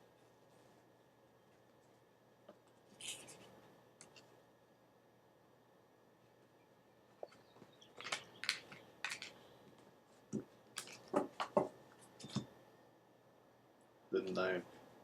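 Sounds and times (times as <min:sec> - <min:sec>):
cards brushing and tapping: 0:07.2 - 0:12.5.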